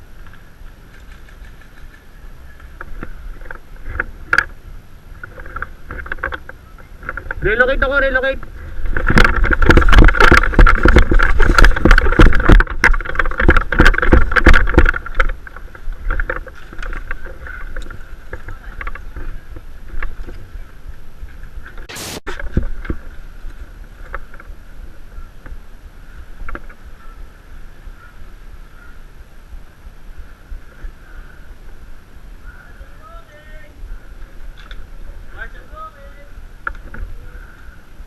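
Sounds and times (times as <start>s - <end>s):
scattered clicks: 0.2s - 2.9s
camera handling knocks and rumbling: 5.2s - 7.4s, 8.4s - 19.3s
steady high hum: 20.5s - 22.5s
short sharp burst of noise: 21.9s - 22.4s.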